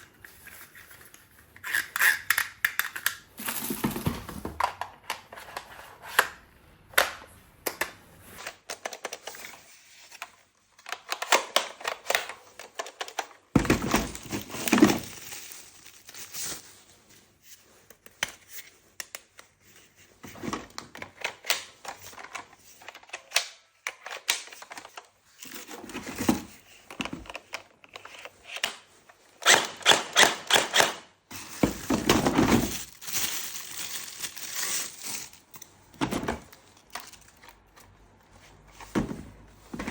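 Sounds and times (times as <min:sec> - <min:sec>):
plastic parts clicking: 0:01.0 - 0:03.2, 0:10.2 - 0:15.2
packaging crinkling: 0:12.5 - 0:16.8, 0:31.4 - 0:35.8, 0:36.4 - 0:37.8.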